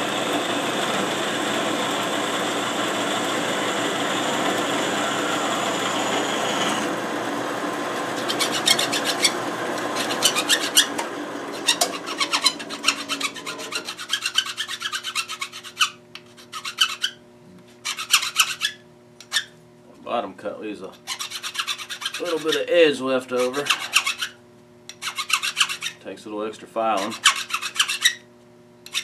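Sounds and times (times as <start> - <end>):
bandsaw whine: 0.0 - 16.0, 21.2 - 24.4
hand file rasping on metal: 8.2 - 17.2, 17.8 - 19.5, 21.0 - 26.0, 26.9 - 28.2.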